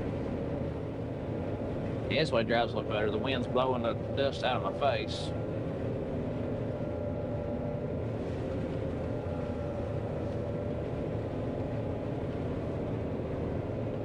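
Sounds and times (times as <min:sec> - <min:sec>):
combine harvester engine rumble: 0:00.0 - 0:14.0
whining tones: 0:00.0 - 0:14.0.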